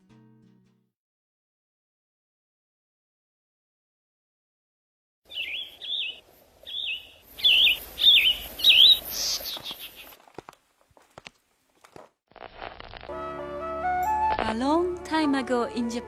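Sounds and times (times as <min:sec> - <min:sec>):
recorded birdsong chirps: 0:05.3 - 0:10.2
faint hiss: 0:05.9 - 0:10.2.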